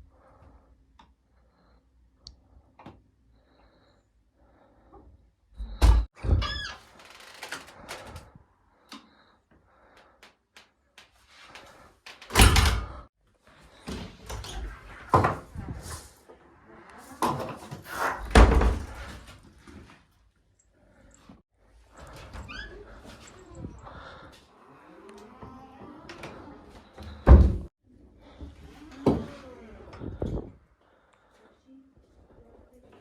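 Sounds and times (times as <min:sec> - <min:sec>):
door squeak: 0:05.6 - 0:08.0, 0:22.0 - 0:27.7.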